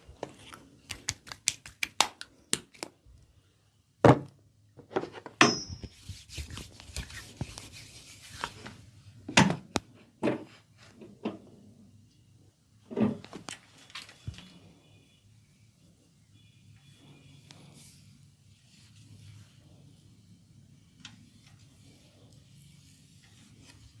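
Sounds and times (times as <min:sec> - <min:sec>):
rustling rubbing noise: 0:05.9 - 0:08.9, 0:17.6 - 0:19.9.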